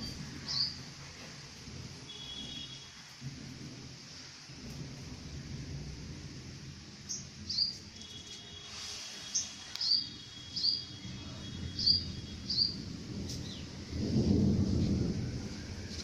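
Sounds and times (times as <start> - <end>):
low rumble of thunder: 0.0 - 8.0, 10.6 - 16.0
bird chirping: 0.5 - 0.8, 7.1 - 8.4, 9.3 - 12.8.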